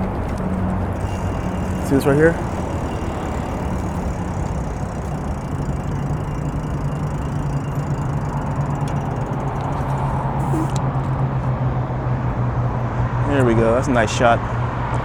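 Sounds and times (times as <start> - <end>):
low hum: 0.0 - 13.2
road traffic noise: 0.0 - 15.0
vehicle engine running: 0.0 - 15.0.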